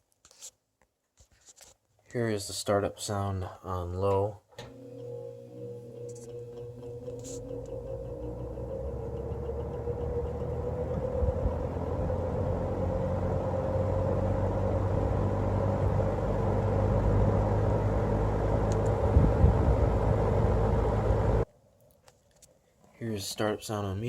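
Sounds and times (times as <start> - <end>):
box fan motor hum: 4.6 - 21.4.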